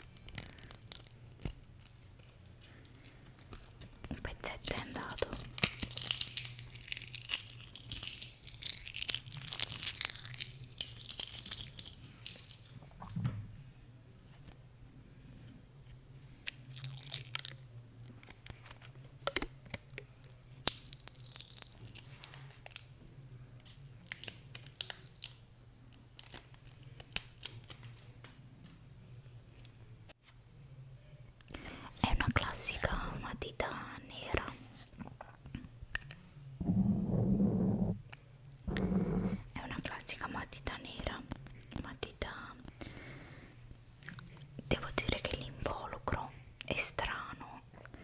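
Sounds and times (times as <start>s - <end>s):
paper wrapping crinkling and tearing: 5.4s - 12.7s
faint low hum: 28.4s - 48.0s.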